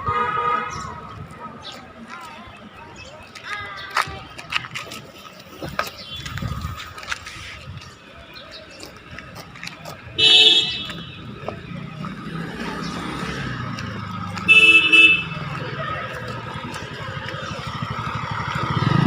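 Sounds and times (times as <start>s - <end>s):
vehicle horn honking: 0.0s - 0.9s, 10.2s - 11.3s, 14.5s - 15.5s
passing engines rumbling: 0.0s - 19.0s.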